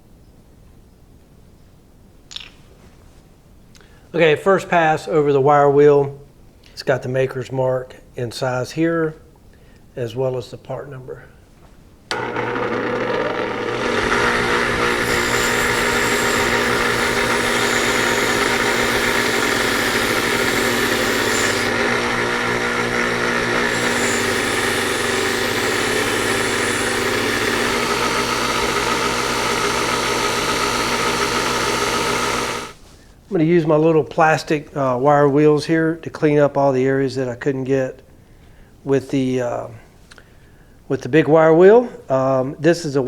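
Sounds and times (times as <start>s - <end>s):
wire wheel scrubbing rust off steel: 13.7s - 32.8s.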